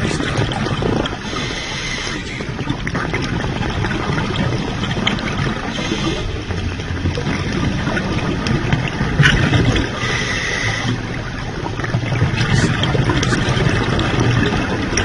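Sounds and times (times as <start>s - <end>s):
diver breathing through regulator: 1.1s - 2.6s, 5.7s - 6.6s, 9.8s - 11.1s.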